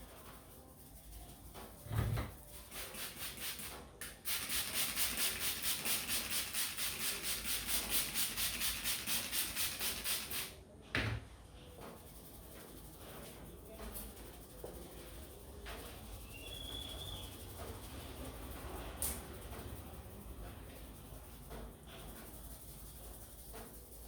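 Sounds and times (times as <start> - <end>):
hands rubbing over hair: 0.3 - 10.5.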